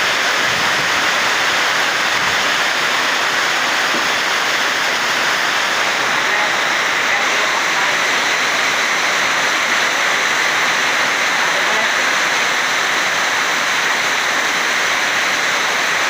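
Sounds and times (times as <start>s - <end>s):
heavy rain pouring: 0.0s - 16.0s.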